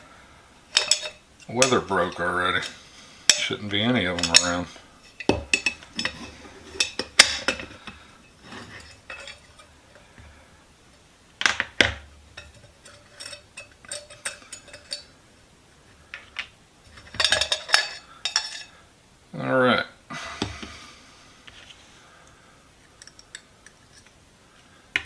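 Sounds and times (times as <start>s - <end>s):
small metal parts clinking: 0.7s - 9.7s, 11.5s - 15.2s, 16.2s - 18.8s, 22.9s - 24.2s.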